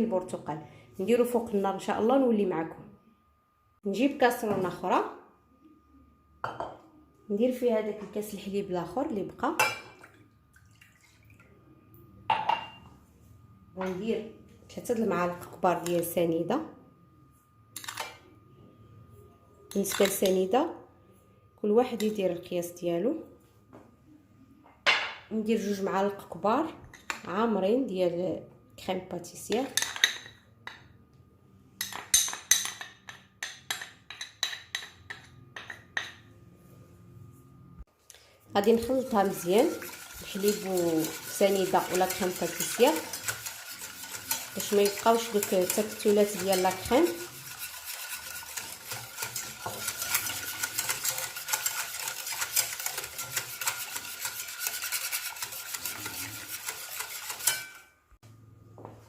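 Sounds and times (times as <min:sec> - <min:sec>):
utensil scraping a saucepan: 0:38.6 - 0:57.9
metal utensil clinking on saucepan: 0:55.5 - 0:57.8.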